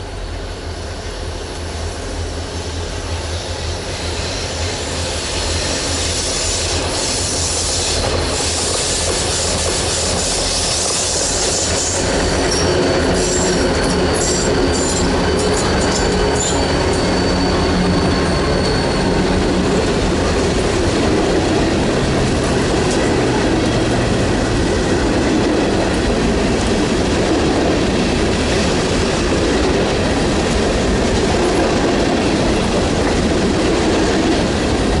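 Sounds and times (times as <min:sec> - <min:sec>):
train wheels rumbling on rails: 0:00.0 - 0:35.0
thin wheel squeal: 0:10.2 - 0:19.5.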